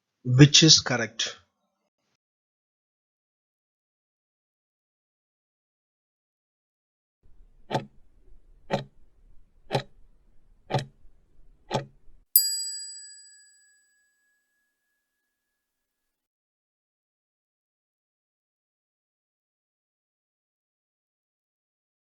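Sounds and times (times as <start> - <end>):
clock ticks: 7.7 - 8.0, 8.7 - 8.9, 9.7 - 9.9, 10.7 - 10.9, 11.7 - 11.9
bell ding: 12.4 - 14.6.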